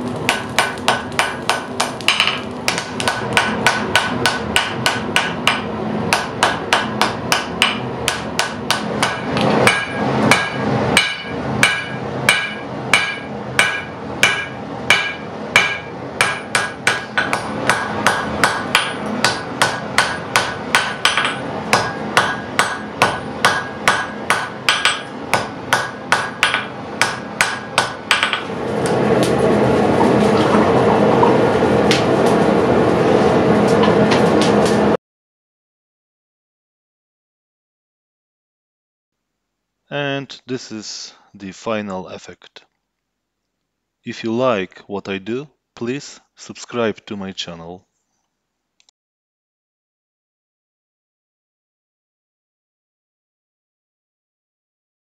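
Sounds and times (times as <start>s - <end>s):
hammer striking steel on anvil: 0.2s - 28.6s.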